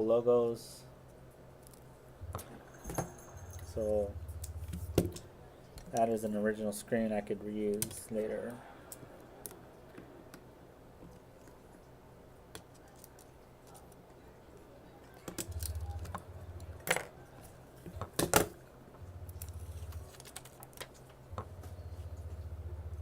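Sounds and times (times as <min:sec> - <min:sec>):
low hum: 0:00.8 - 0:05.8, 0:14.2 - 0:17.9, 0:18.6 - 0:23.0.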